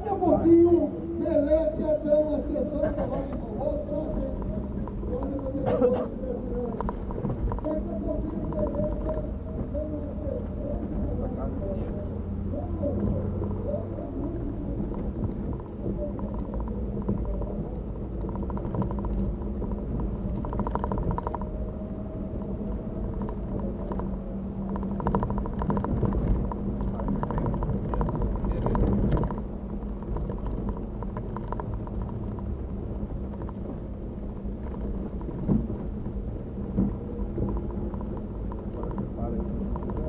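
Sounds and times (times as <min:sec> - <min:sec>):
engine drone: 0:00.0 - 0:40.0
road rumble: 0:00.0 - 0:40.0
rattling in car cabin: 0:12.9 - 0:40.0.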